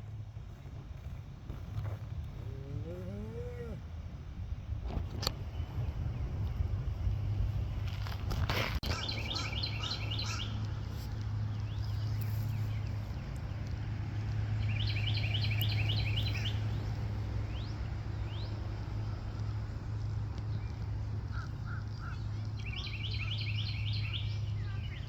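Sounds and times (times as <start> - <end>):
steady low hum: 0.0 - 8.5
songbird chirping: 14.4 - 18.6, 20.4 - 25.0.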